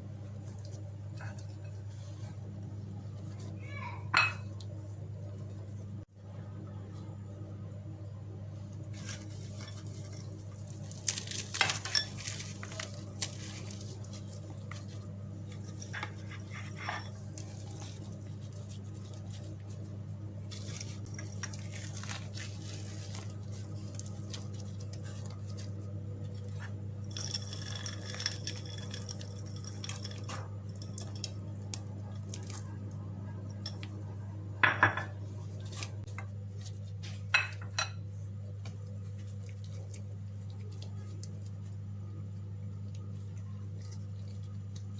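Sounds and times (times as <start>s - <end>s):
steady low hum: 0.0s - 44.9s
utensils and dishes clinking: 4.1s - 4.6s, 9.0s - 14.9s, 37.3s - 38.0s.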